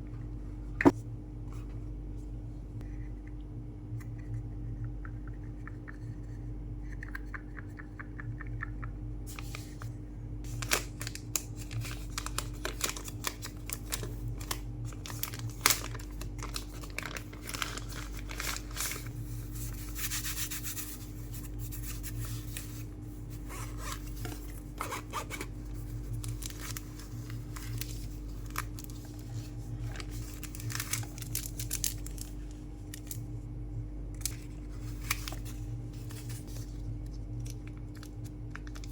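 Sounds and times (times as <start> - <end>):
steady low hum: 0.0 - 38.9
cardboard and plastic crackling: 10.5 - 19.2, 23.4 - 33.3, 34.2 - 38.9.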